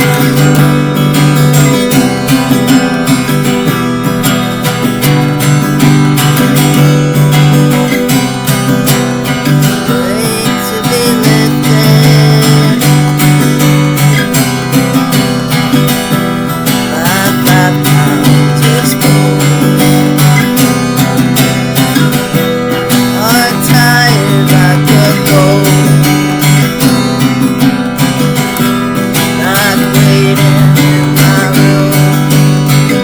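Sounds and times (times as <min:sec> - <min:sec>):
acoustic guitar strumming chords: 0:00.0 - 0:33.0.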